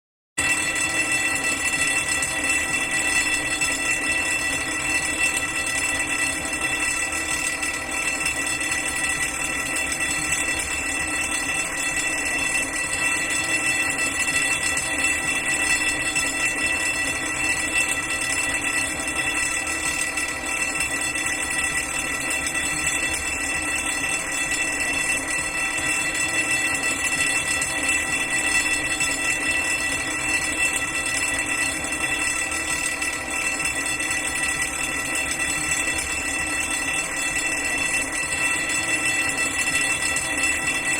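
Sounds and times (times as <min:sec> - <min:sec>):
fire alarm bell ringing: 0:00.4 - 0:40.9.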